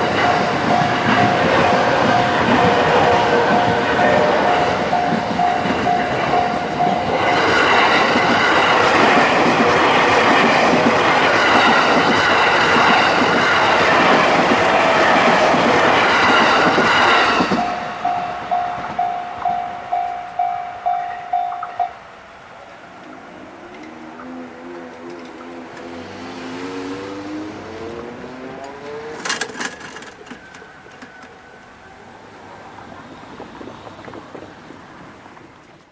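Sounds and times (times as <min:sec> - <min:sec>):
train wheels running: 0:00.0 - 0:21.8, 0:22.8 - 0:31.5.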